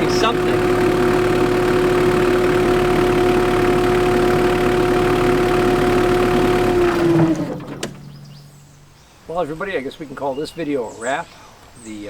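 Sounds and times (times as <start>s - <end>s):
backhoe engine idling: 0.0s - 9.0s
constant whine: 0.0s - 9.0s.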